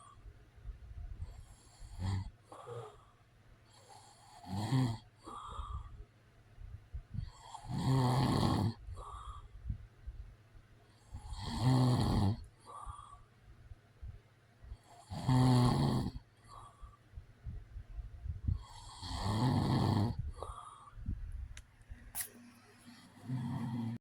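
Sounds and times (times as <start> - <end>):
man snoring: 1.6 - 3.1, 3.8 - 5.8, 7.3 - 9.2, 11.2 - 13.0, 15.0 - 16.2, 18.6 - 20.6, 23.2 - 24.0
soft breath out: 5.2 - 6.0, 8.9 - 9.8.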